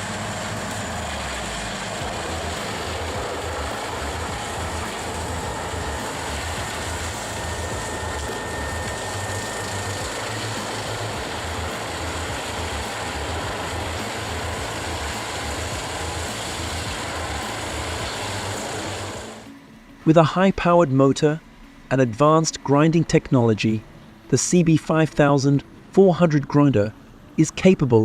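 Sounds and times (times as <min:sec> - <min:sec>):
diesel engine running: 0:00.0 - 0:19.5.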